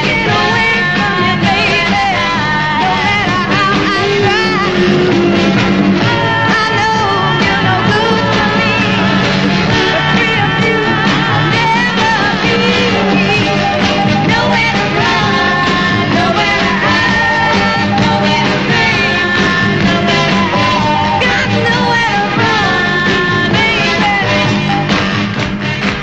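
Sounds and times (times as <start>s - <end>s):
woman singing soul song: 0.0s - 9.2s, 9.8s - 24.8s
band playing steady beat: 0.0s - 26.0s.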